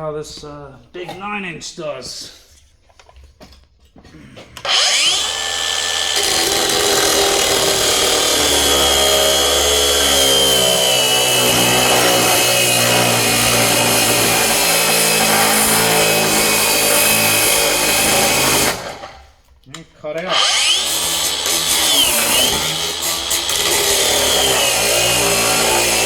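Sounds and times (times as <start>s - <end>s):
angle grinder cutting steel: 4.6s - 19.3s, 20.2s - 26.0s.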